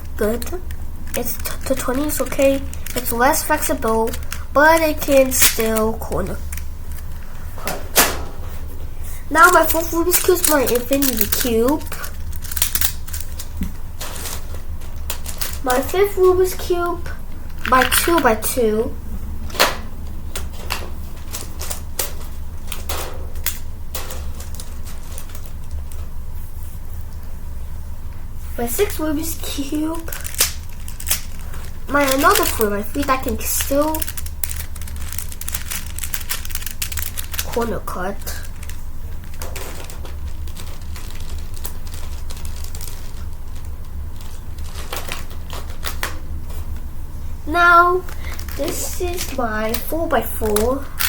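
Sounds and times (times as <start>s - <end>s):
steady low hum: 0.0s - 51.0s
puzzle cube plastic clicks: 0.2s - 7.0s, 9.4s - 14.3s, 17.6s - 18.3s, 30.0s - 43.7s, 48.0s - 51.0s.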